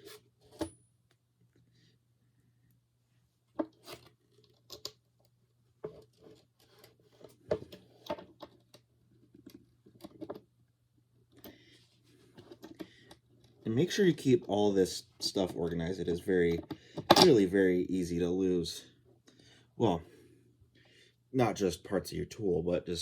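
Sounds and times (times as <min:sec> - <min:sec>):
small bolts clicking and rustling: 0:03.6 - 0:10.5.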